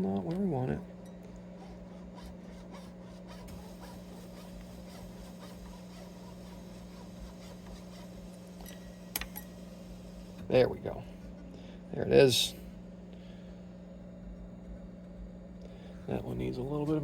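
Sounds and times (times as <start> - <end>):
low electrical hum: 0.0 - 17.0
file scraping in slot: 1.1 - 9.1.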